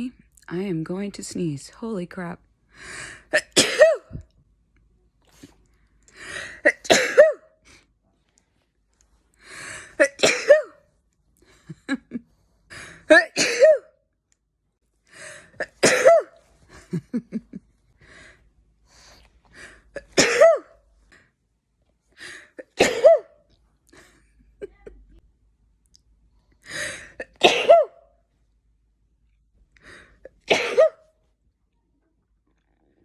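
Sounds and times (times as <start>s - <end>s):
person sneezing: 6.4s - 7.4s, 15.6s - 16.4s, 20.0s - 20.7s, 22.6s - 23.3s, 27.2s - 27.9s, 30.5s - 31.0s.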